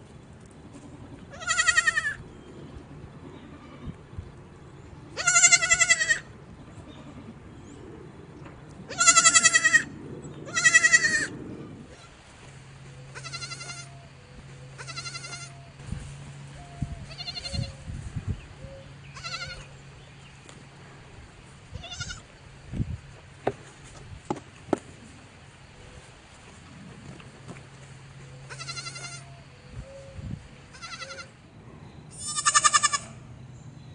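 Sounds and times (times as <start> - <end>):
goats bleating: 0.8 - 2.2, 5.2 - 7.3, 8.9 - 12.1, 13.1 - 14.0, 14.8 - 15.6, 19.2 - 19.7, 21.8 - 22.3, 28.5 - 29.4, 30.7 - 31.4, 32.1 - 33.2.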